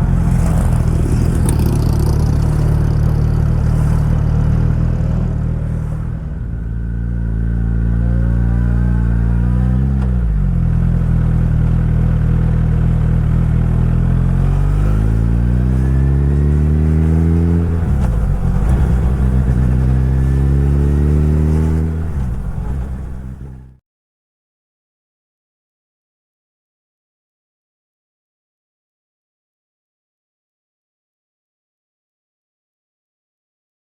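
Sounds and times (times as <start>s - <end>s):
motorcycle engine accelerating: 0.0s - 23.8s.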